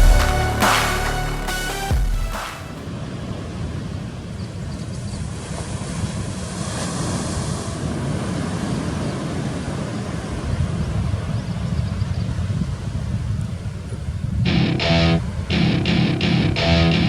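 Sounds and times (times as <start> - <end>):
ocean surf breaking: 14.5 - 17.0.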